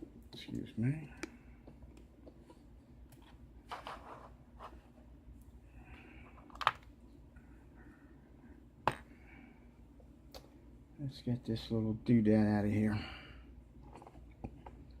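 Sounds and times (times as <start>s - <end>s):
objects rustling on a desk: 2.4s - 5.1s.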